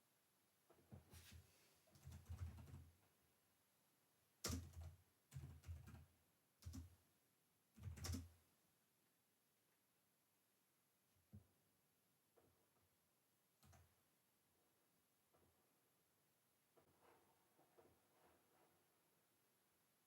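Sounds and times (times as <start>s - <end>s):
computer keyboard typing: 1.9s - 2.9s, 4.4s - 6.9s, 7.8s - 8.3s.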